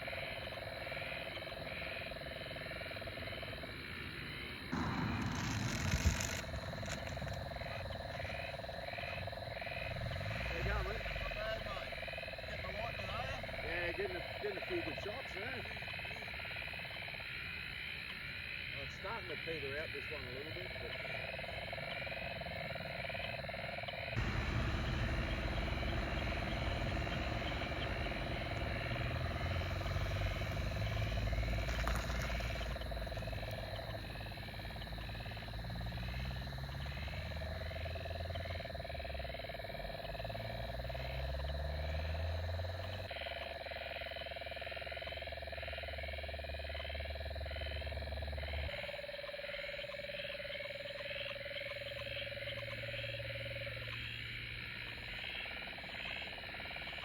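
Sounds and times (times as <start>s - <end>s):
frogs calling: 0.0s - 57.0s
insects chirping: 0.0s - 57.0s
distant thunder rumble: 24.2s - 38.5s.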